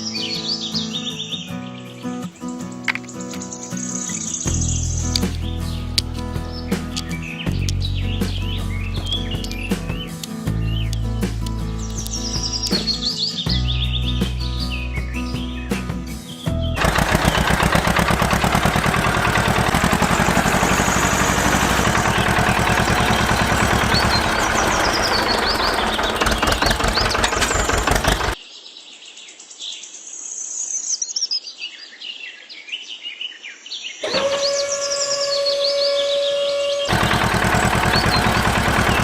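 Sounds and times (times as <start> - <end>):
birds chirping: 0.0 - 28.4, 33.9 - 39.0
pulsing motor-driven machine: 16.8 - 28.4, 34.0 - 39.0.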